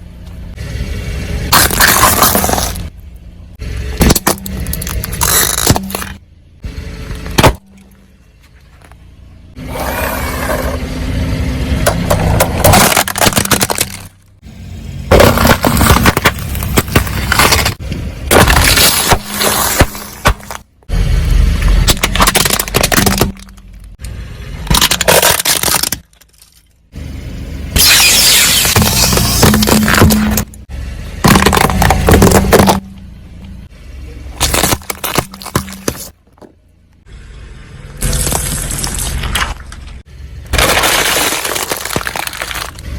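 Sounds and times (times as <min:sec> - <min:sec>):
steady low rumble: 0:00.0 - 0:25.2
tyres crushing objects: 0:01.5 - 0:02.9, 0:03.9 - 0:06.2, 0:07.1 - 0:08.0, 0:11.9 - 0:14.4, 0:15.1 - 0:20.8, 0:21.6 - 0:24.0, 0:24.6 - 0:26.8, 0:27.8 - 0:33.0, 0:34.4 - 0:36.6, 0:38.0 - 0:42.9.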